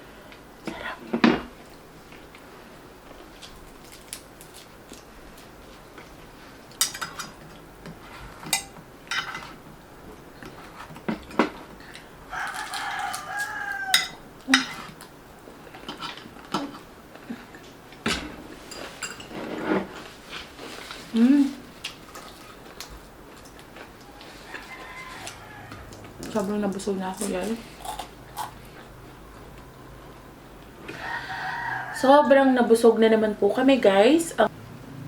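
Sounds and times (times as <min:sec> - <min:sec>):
cutlery clinking against plates: 0:06.8 - 0:07.5, 0:08.4 - 0:09.6, 0:14.0 - 0:15.0, 0:18.1 - 0:19.4
rooster crowing: 0:12.3 - 0:14.2, 0:24.0 - 0:26.0, 0:30.8 - 0:32.5.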